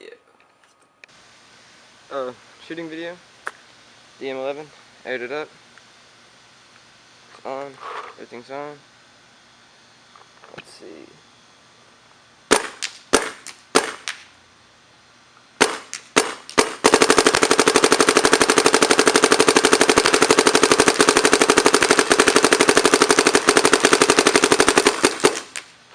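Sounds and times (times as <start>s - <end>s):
paintball marker firing: 12.5s - 14.3s, 15.6s - 25.8s.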